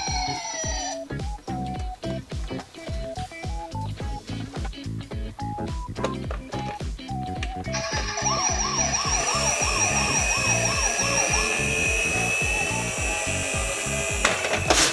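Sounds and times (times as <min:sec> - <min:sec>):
toy electronic siren warbling: 0:00.0 - 0:01.0, 0:07.7 - 0:14.7
background music with steady beat: 0:00.0 - 0:14.9.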